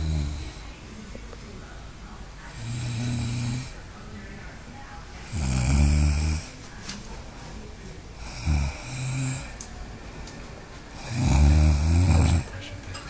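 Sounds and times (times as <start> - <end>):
person snoring: 5.3 - 6.4, 8.2 - 9.5, 11.0 - 12.5.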